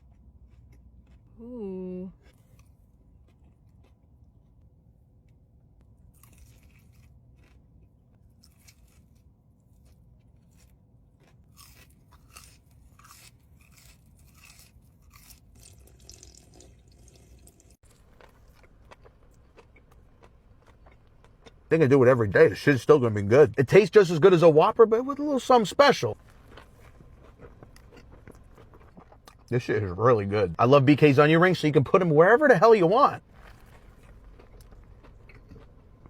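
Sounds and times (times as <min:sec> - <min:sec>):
crunchy sandwich chewing: 0:00.0 - 0:16.2, 0:17.8 - 0:21.8, 0:26.2 - 0:29.5, 0:33.2 - 0:36.0.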